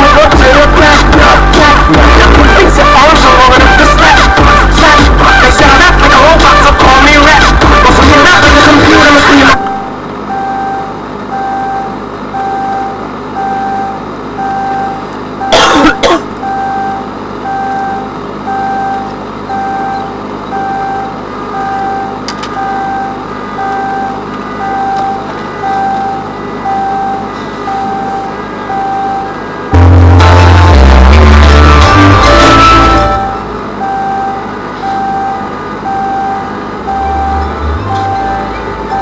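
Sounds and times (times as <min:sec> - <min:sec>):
subwoofer bass: 0:00.0 - 0:10.1, 0:29.7 - 0:33.7, 0:36.8 - 0:39.0
car alarm beeping: 0:00.0 - 0:39.0
loud burst of noise: 0:29.5 - 0:33.6.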